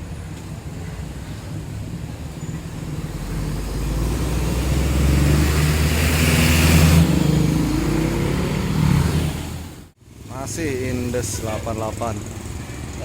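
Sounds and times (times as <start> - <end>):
bus diesel engine pulling away: 0.2 - 9.9.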